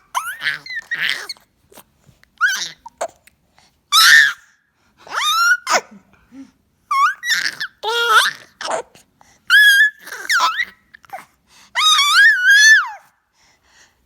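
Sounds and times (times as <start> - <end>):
high-pitched squeaky vocal squeals: 0.0 - 1.5, 2.4 - 3.2, 3.9 - 4.4, 5.1 - 5.9, 6.9 - 8.9, 9.5 - 11.2, 11.8 - 13.1.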